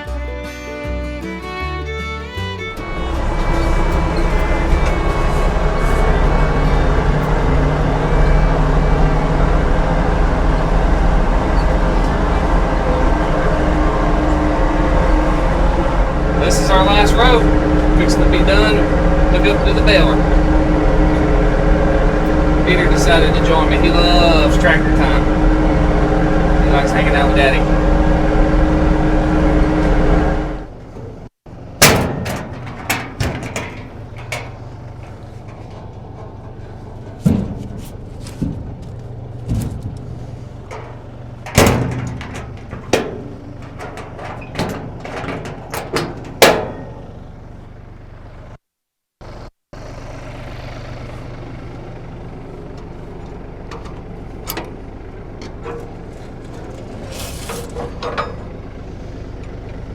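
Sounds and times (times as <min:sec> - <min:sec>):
tractor engine droning: 0:00.0 - 0:48.6, 0:49.2 - 0:59.9
sharp metal clanks: 0:31.8 - 0:47.2.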